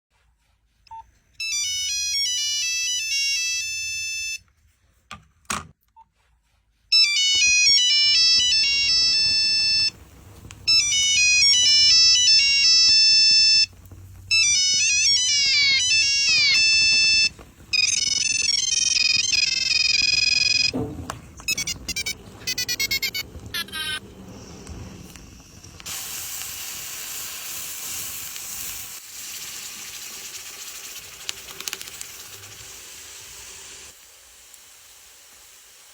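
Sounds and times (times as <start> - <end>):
mobile phone ringtone melody: 1.4 - 4.4, 6.9 - 10.0, 10.7 - 13.7, 14.3 - 20.8, 21.5 - 24.0
steady hiss: 24.0 - 35.9.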